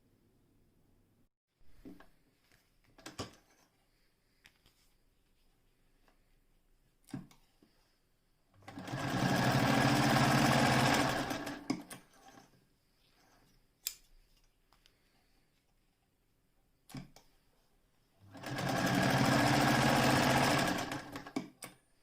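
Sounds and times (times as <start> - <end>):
electric sewing machine running: 8.7 - 12.4, 18.3 - 21.4.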